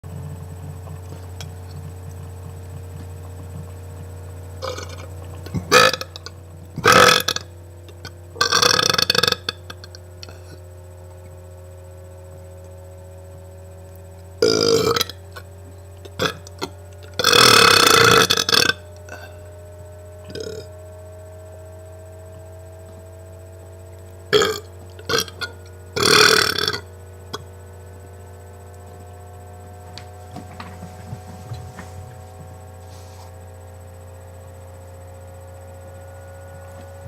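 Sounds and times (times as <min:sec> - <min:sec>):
person burping: 0:04.6 - 0:10.6, 0:14.4 - 0:15.2, 0:16.1 - 0:19.4, 0:20.3 - 0:20.7, 0:24.4 - 0:27.4.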